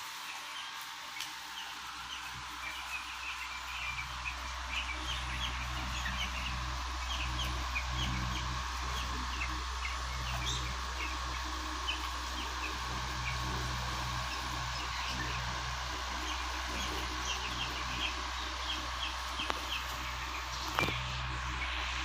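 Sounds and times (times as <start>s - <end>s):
chicks peeping: 0.0s - 22.0s
steady low hum: 0.0s - 22.0s.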